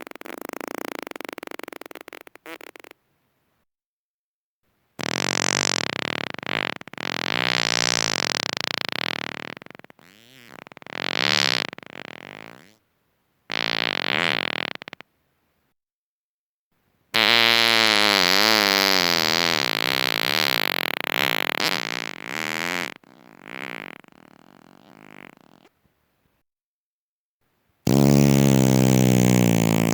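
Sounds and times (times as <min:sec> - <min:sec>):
buzzing farts: 0:00.0 - 0:03.0, 0:05.0 - 0:12.8, 0:13.5 - 0:15.0, 0:17.2 - 0:25.8, 0:27.8 - 0:29.9.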